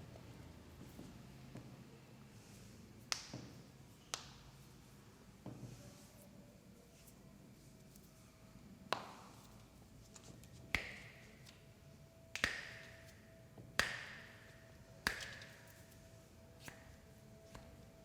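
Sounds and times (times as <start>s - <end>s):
hand slaps on body: 3.1s - 4.4s, 8.9s - 9.4s, 10.7s - 11.6s, 12.3s - 13.2s, 13.8s - 15.8s, 16.6s - 17.7s.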